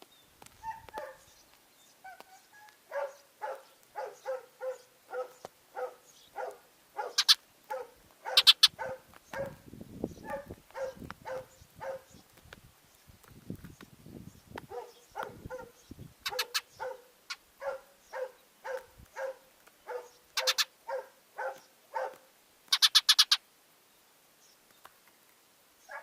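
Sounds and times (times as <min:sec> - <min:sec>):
animal short calls: 0:07.0 - 0:07.4, 0:08.3 - 0:08.9, 0:16.2 - 0:17.4, 0:20.0 - 0:20.8, 0:22.7 - 0:23.4.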